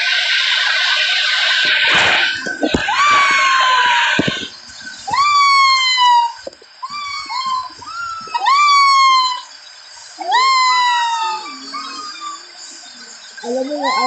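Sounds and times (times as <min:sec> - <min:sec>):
animal drawn-out calls: 0:05.1 - 0:14.0.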